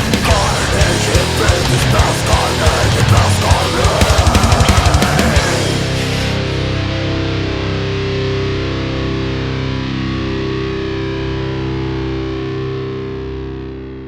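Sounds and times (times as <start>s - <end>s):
drums: 0.0s - 8.4s
distorted electric guitar chord: 0.0s - 14.0s.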